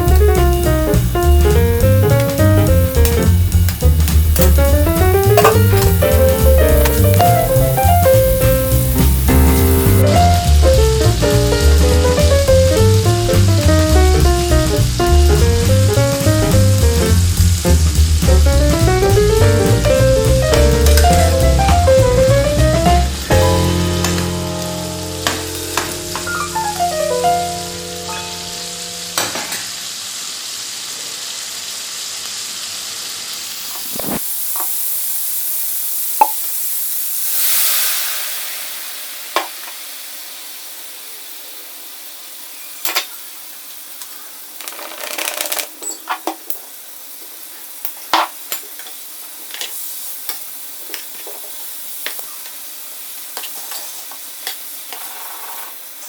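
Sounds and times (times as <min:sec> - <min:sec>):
food sizzling in a frying pan: 0:00.0 - 0:56.0
utensil clicking against pan: 0:00.1 - 0:09.2.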